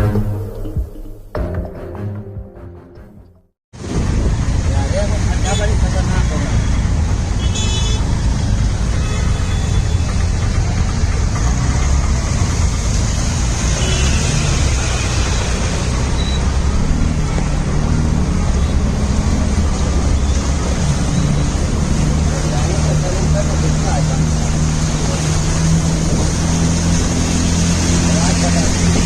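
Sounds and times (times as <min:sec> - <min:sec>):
water wash from tyres: 0:03.8 - 0:29.0
engine rumble: 0:08.1 - 0:13.6.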